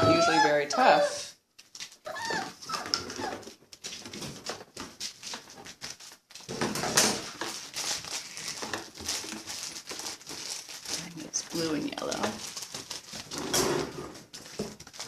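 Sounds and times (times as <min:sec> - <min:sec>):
puppy yips: 0:00.0 - 0:01.3, 0:02.0 - 0:03.5
puppy whine: 0:00.0 - 0:01.4, 0:02.0 - 0:03.6
puppies scuffling and rustling: 0:00.0 - 0:15.0.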